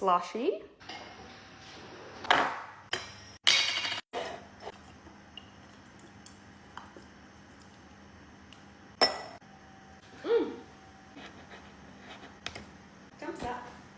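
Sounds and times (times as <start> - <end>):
glassware clinking: 9.0 - 9.4.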